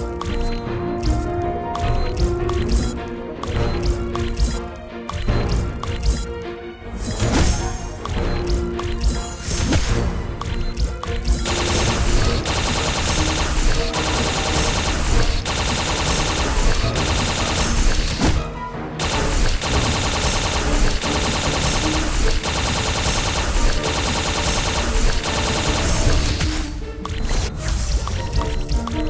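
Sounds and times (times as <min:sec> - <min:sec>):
music with fast percussive beat: 0:07.9 - 0:18.4, 0:19.0 - 0:29.0.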